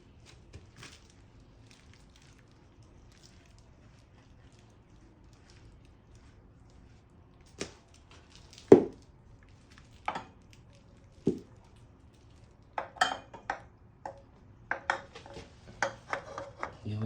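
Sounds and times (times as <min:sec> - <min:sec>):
oil filters clinking on hard surface: 0:12.8 - 0:16.7.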